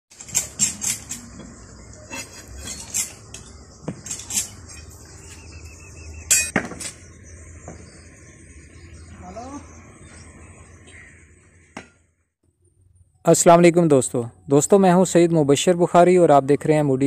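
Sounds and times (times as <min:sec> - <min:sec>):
trowel scraping bricks: 0:00.1 - 0:05.6.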